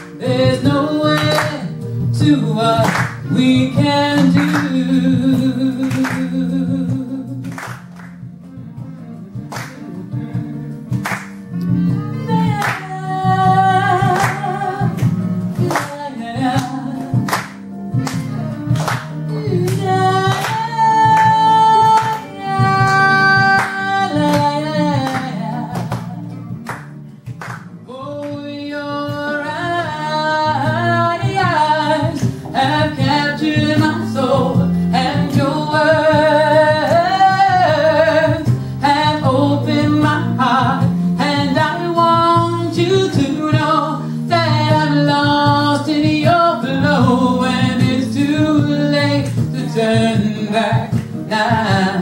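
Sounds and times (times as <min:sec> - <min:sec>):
woman singing: 0:00.0 - 0:07.6, 0:11.8 - 0:26.6, 0:27.8 - 0:52.0
instrumental accompaniment: 0:00.0 - 0:52.0.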